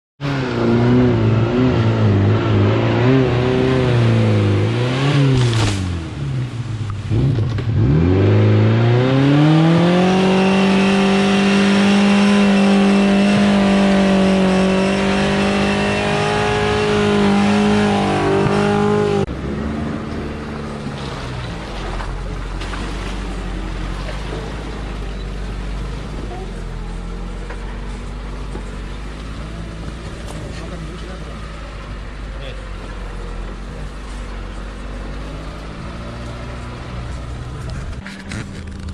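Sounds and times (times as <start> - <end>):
vehicle engine revving: 0.2 - 38.9.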